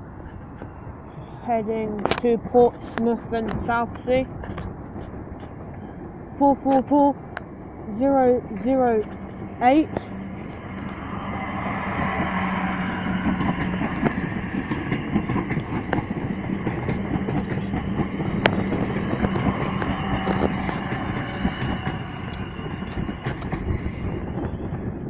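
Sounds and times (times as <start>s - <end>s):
electric train hum: 0.0s - 25.0s
wheels clicking over rail joints: 13.2s - 24.9s.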